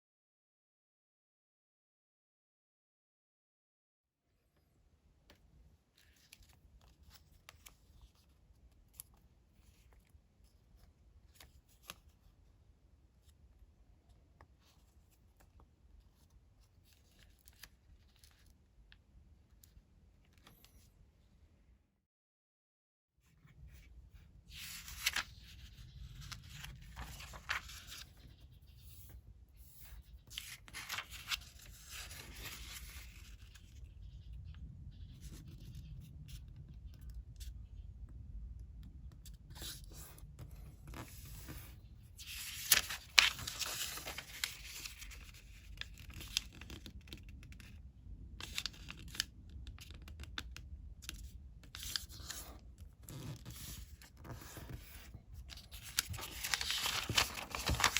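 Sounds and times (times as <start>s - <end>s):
paper crackling as creased: 24.5s - 33.8s, 40.9s - 47.2s, 48.4s - 50.0s, 51.7s - 57.9s
paper rustling: 24.5s - 34.2s, 39.6s - 47.2s, 51.7s - 57.9s.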